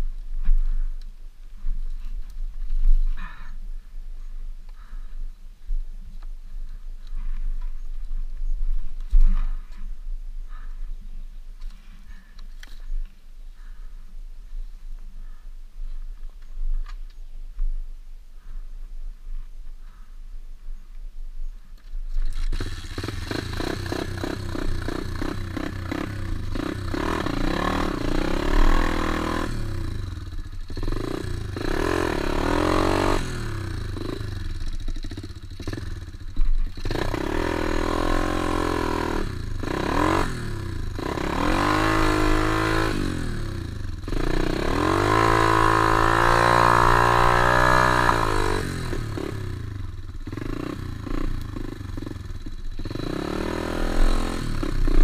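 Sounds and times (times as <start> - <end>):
motorbike engine revving: 22.1 - 55.0.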